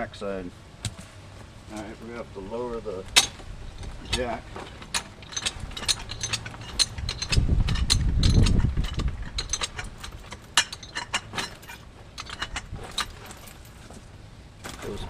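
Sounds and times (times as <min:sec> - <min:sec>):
low rumble: 0:03.0 - 0:13.6
jack ratchet clicking and clanking: 0:03.1 - 0:13.8.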